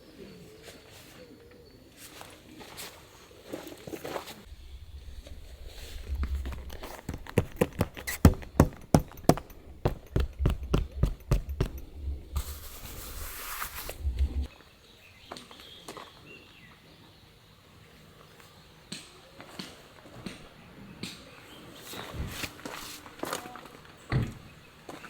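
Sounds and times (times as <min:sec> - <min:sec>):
camp gear clicking and knocking: 0:05.3 - 0:14.5.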